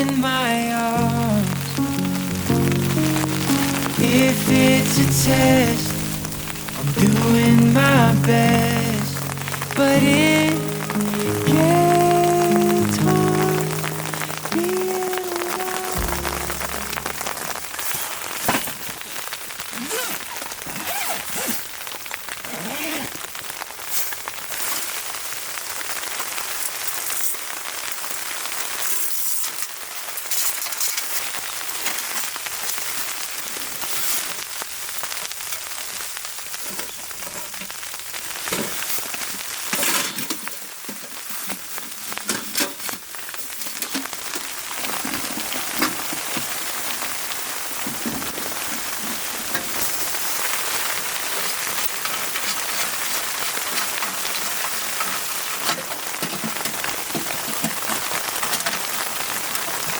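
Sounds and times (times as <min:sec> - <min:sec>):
rain patter on a surface: 0:00.0 - 0:59.9.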